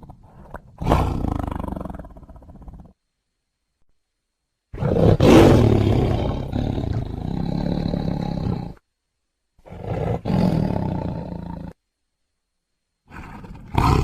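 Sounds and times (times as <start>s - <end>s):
tiger roaring: 0.0s - 3.0s, 4.8s - 8.8s, 9.6s - 11.8s, 13.1s - 14.0s.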